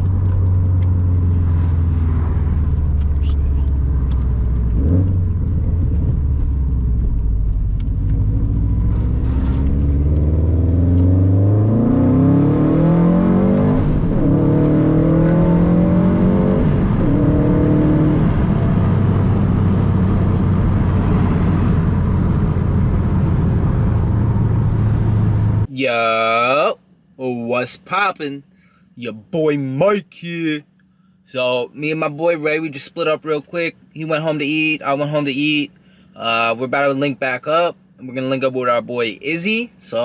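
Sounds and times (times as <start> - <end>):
car engine accelerating: 0.0 - 25.7.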